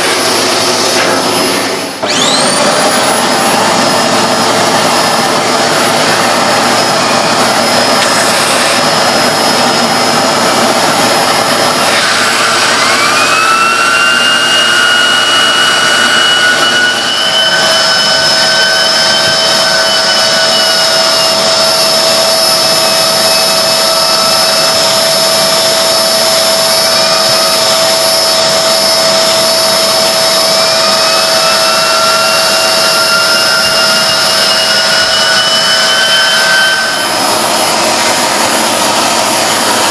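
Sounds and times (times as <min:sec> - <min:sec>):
vacuum cleaner whining: 0:00.0 - 0:39.9.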